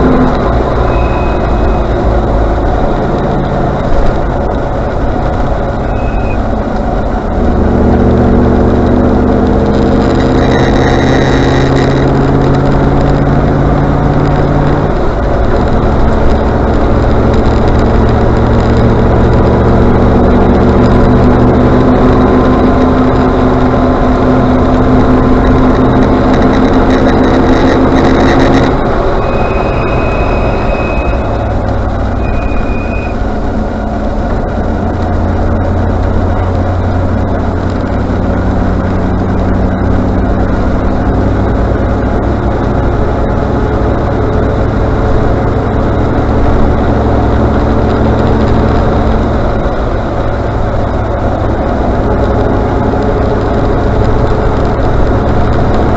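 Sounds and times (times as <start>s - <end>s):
brakes squealing: 0.0s - 55.9s
car engine pulling: 0.0s - 55.9s.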